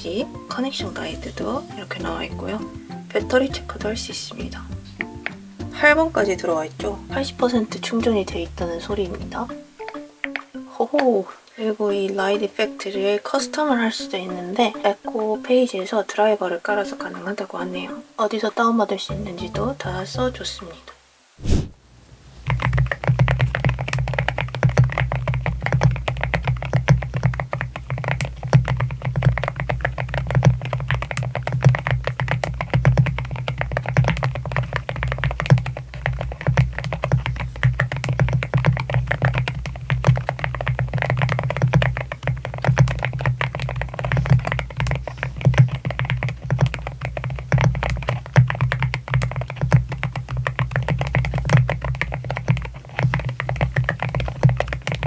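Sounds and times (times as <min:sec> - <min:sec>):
fast typing on a keyboard: 0:00.1 - 0:10.4, 0:22.5 - 0:55.0.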